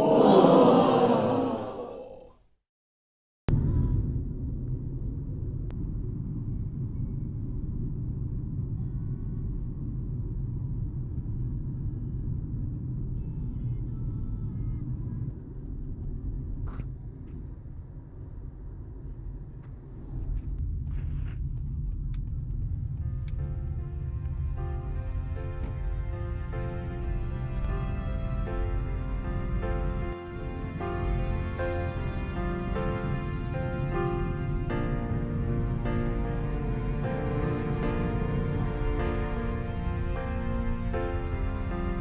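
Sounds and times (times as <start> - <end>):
steady low rumble: 3.5 - 42.0
faint music: 5.8 - 15.8, 20.6 - 42.0.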